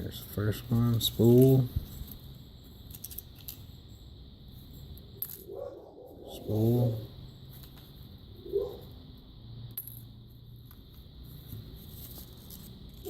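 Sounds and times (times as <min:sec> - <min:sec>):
small metal lock parts clicking: 0:02.9 - 0:03.7.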